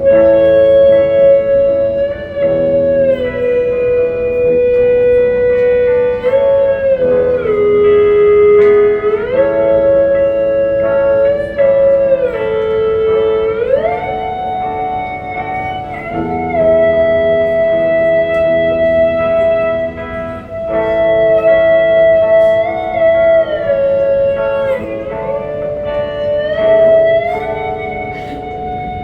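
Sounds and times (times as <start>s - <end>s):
electric guitar gliding melody: 0.0s - 29.0s
held guitar chords: 0.0s - 29.0s.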